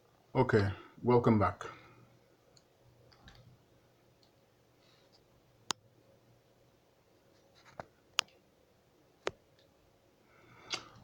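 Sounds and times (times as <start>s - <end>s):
faint scratching: 7.2s - 7.9s.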